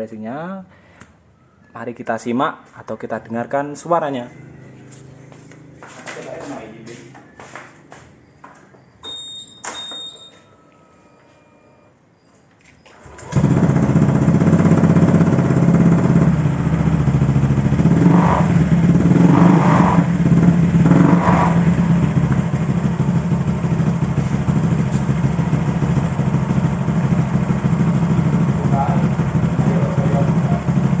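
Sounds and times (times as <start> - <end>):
engine throttle blips: 3.8 - 12.0, 12.9 - 31.0
scooter engine idling: 4.0 - 10.3, 12.9 - 31.0.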